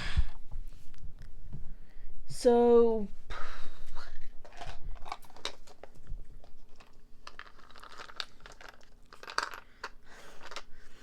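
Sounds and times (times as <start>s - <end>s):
crinkling: 4.0s - 11.0s
plastic toys clicking and tapping: 7.3s - 10.7s.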